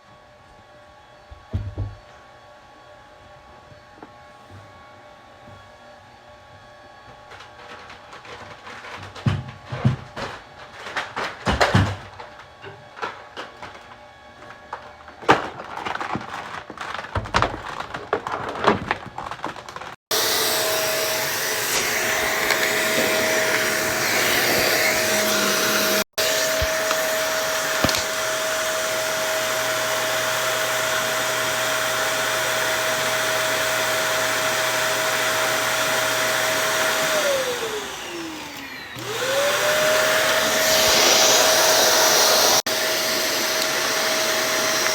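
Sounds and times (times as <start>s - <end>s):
vacuum cleaner motor whining: 0.1s - 44.9s.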